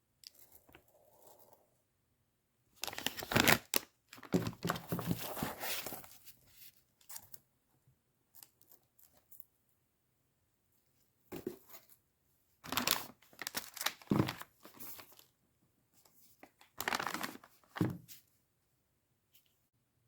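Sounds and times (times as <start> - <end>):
packaging crinkling and tearing: 2.8 - 5.9, 12.7 - 15.2, 16.6 - 17.6.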